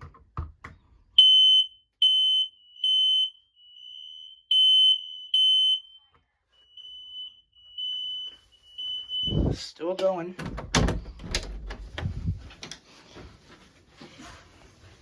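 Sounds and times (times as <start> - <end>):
smoke detector beeping: 1.2 - 6.0.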